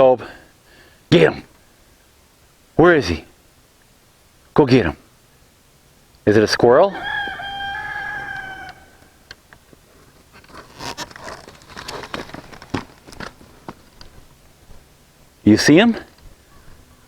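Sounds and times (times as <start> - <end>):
animal high steady call: 6.6 - 9.3
light rustles and clicks: 8.7 - 14.9.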